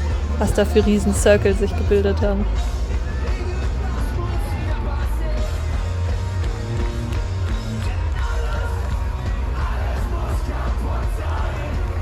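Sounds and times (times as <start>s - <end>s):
crowd yelling and singing along: 0.0s - 6.1s, 7.8s - 12.0s.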